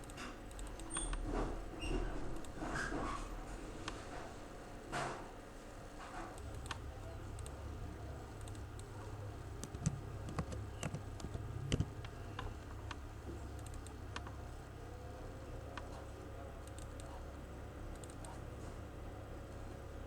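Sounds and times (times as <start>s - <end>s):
computer keyboard and mouse clicks: 0.0s - 1.5s, 2.3s - 2.7s, 6.0s - 7.6s, 8.3s - 14.4s, 15.7s - 17.2s, 17.9s - 18.4s
low steady hum: 0.0s - 20.0s.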